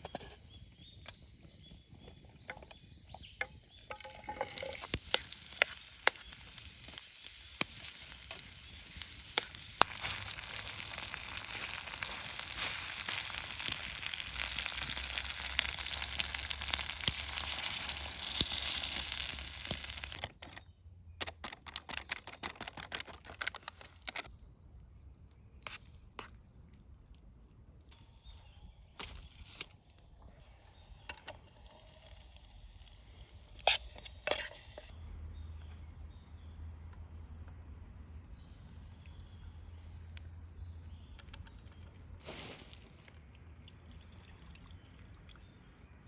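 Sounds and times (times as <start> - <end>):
food sizzling in a hot pan: 4.1 - 20.2
scattered crackles: 4.5 - 20.6.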